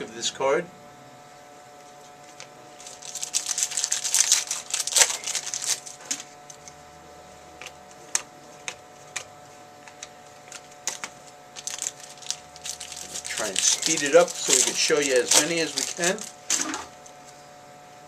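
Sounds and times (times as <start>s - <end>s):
foil wrappers crinkling: 1.8s - 6.8s, 7.6s - 17.4s
cards clicking as shuffled: 2.3s - 6.8s, 7.6s - 17.4s.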